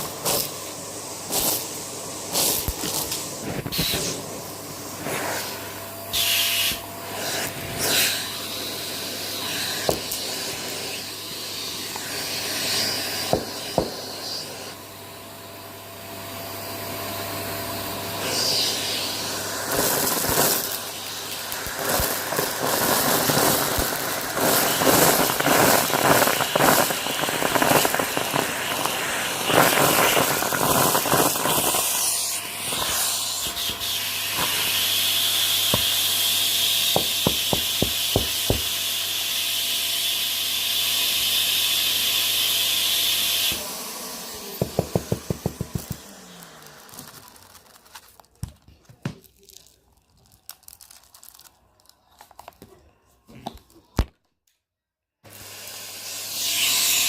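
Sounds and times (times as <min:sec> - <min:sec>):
brittle material crunching: 0:45.8 - 0:52.6.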